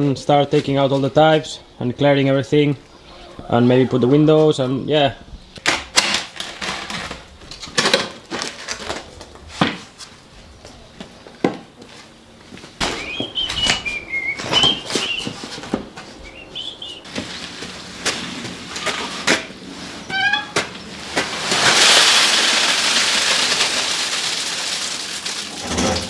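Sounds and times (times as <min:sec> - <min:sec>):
bird chirping: 0:01.6 - 0:03.9, 0:12.9 - 0:15.4, 0:16.2 - 0:17.1
knocks and scrapes: 0:17.1 - 0:22.2, 0:25.5 - 0:26.0.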